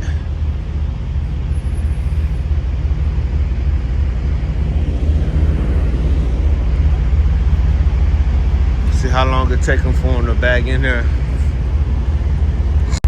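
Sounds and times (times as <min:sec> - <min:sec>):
diesel truck engine running: 0:00.0 - 0:13.0.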